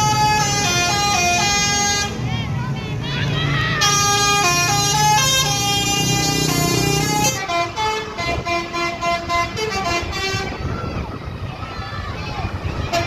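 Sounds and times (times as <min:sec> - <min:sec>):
bus horn playing melody: 0:00.0 - 0:02.2, 0:03.8 - 0:10.6.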